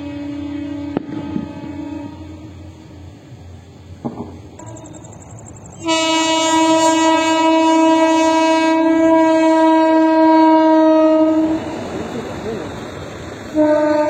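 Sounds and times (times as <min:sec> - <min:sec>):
long steady horn blast: 0:00.0 - 0:03.3, 0:05.8 - 0:12.6, 0:13.5 - 0:14.0.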